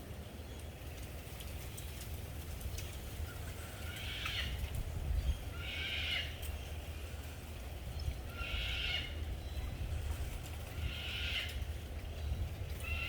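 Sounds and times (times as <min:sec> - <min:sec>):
steady low rumble: 0:06.2 - 0:13.0.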